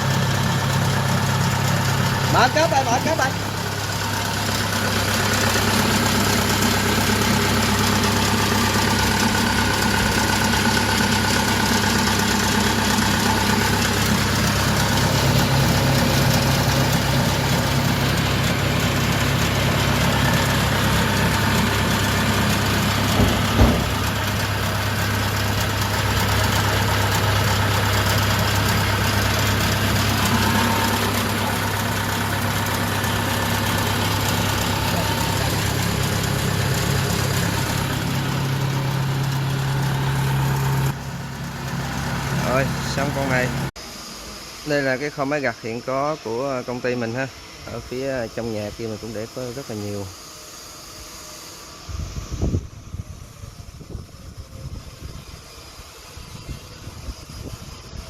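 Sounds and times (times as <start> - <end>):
diesel engine running: 0.0 - 44.2
short knock: 23.1 - 24.2.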